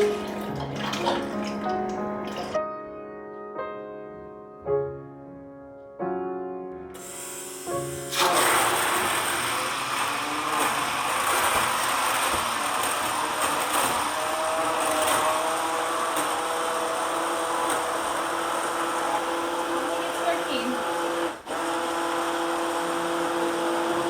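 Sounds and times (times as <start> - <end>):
immersion blender running: 7.0 - 24.0.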